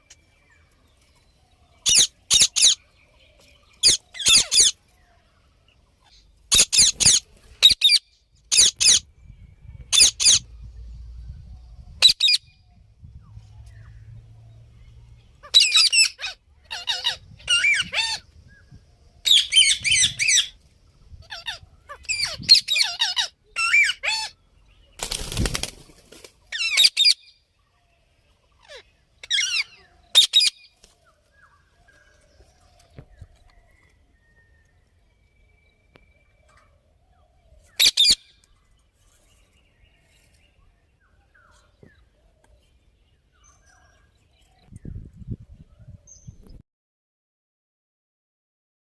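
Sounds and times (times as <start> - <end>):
parrot squawking and chattering: 1.8 - 2.8, 3.8 - 4.8, 6.5 - 9.0, 12.0 - 12.4, 15.4 - 18.2, 21.2 - 24.4, 26.5 - 27.2, 28.6 - 30.5, 37.8 - 38.2.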